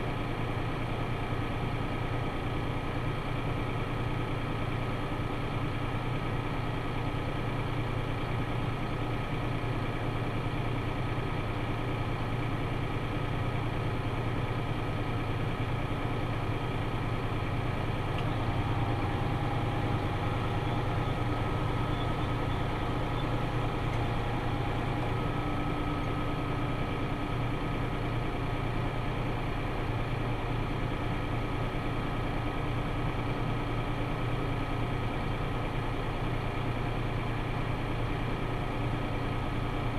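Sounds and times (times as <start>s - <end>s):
tractor engine running: 0.0s - 39.9s
faint whining tones: 18.1s - 27.0s.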